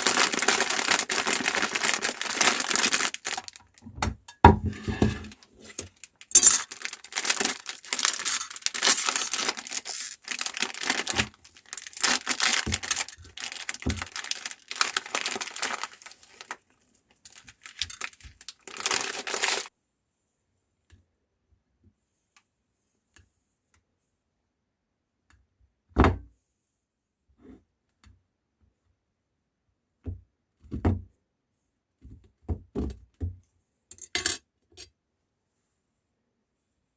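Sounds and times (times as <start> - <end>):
plastic packaging crinkling and tearing: 0.0 - 3.8, 5.2 - 19.7
thump: 26.0 - 26.3.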